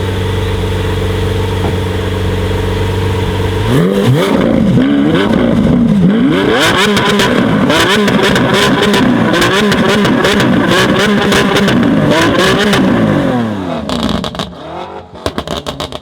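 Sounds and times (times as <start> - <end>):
car engine idling and revving: 0.0 - 16.0
exhaust crackles and pops: 13.8 - 14.6, 15.2 - 16.0.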